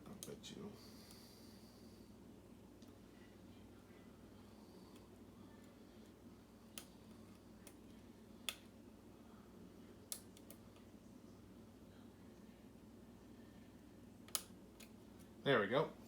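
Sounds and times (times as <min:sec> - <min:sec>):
low room hum: 0:00.0 - 0:16.0.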